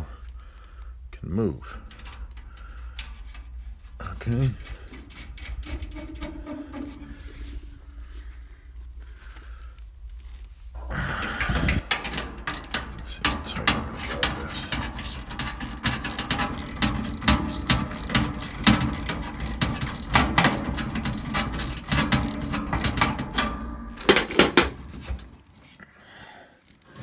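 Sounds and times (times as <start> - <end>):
screwdriver ratcheting clicks: 11.9 - 23.4, 24.0 - 24.9.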